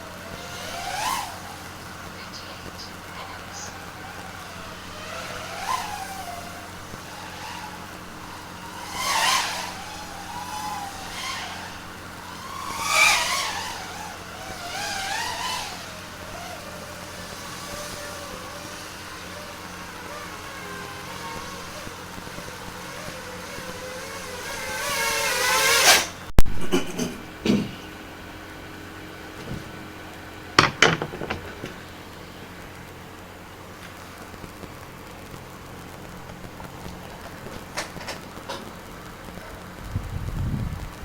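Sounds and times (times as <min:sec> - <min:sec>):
quadcopter motors whining: 0:00.0 - 0:41.0.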